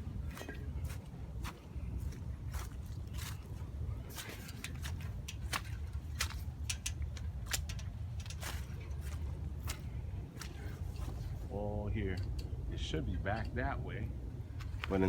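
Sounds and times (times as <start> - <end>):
footsteps crunching on wet ground: 0.0 - 6.7, 7.3 - 11.5
steady low rumble: 0.0 - 15.0.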